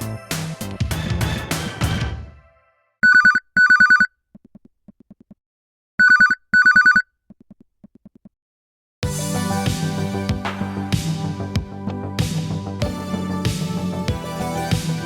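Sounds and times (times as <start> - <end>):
retro telephone ringing: 3.0 - 4.1, 6.0 - 7.1.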